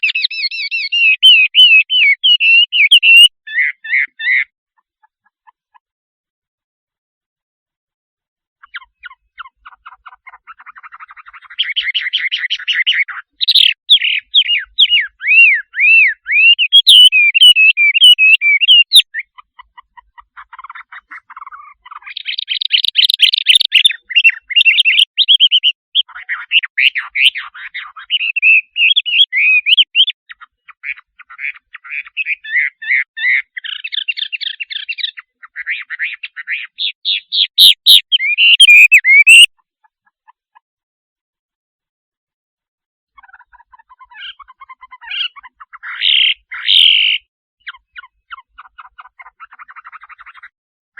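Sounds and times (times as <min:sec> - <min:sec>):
shrike singing: 0:00.0 - 0:04.4, 0:10.7 - 0:19.3, 0:36.7 - 0:39.5.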